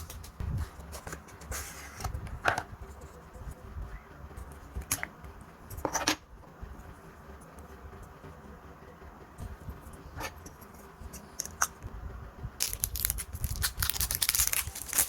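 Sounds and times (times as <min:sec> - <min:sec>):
plastic wrap scrapes and clicks: 0:12.6 - 0:15.0.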